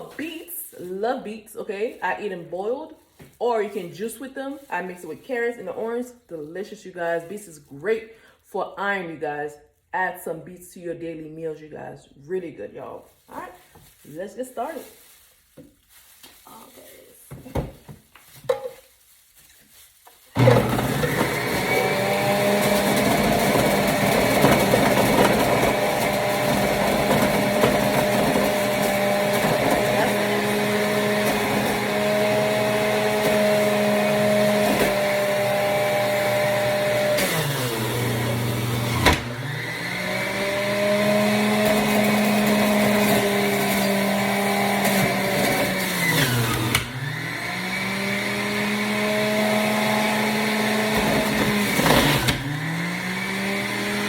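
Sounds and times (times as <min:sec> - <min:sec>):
electric juicer motor humming: 0:20.4 - 0:54.0.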